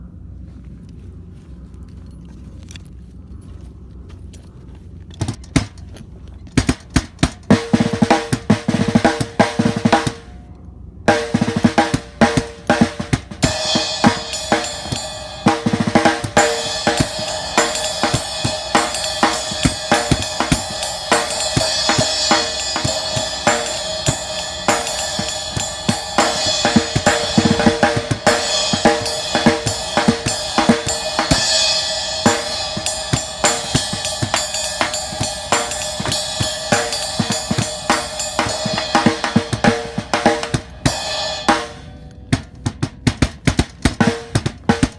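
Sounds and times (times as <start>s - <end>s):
drum bass and snare hits: 5.2s - 5.8s, 6.6s - 10.4s, 11.1s - 44.9s
drum playing steady groove: 5.2s - 5.9s, 6.5s - 10.4s, 11.1s - 44.9s
cymbal: 11.1s - 42.5s.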